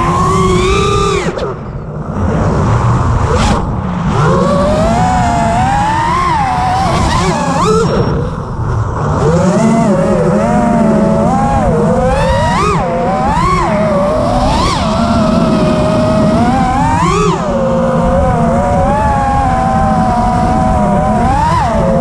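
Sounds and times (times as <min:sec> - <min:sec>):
quadcopter motors whining: 0:00.0 - 0:02.0, 0:03.2 - 0:22.0
rushing low noise: 0:01.8 - 0:12.2.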